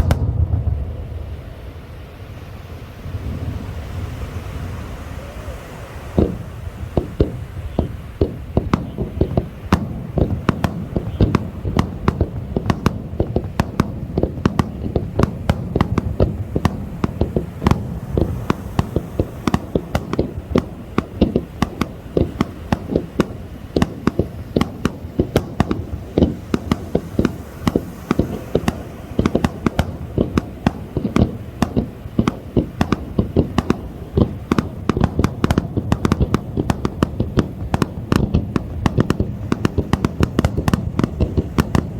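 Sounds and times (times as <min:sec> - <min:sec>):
low rumble: 0:00.0 - 0:04.7
firework bangs and crackles: 0:00.0 - 0:41.9.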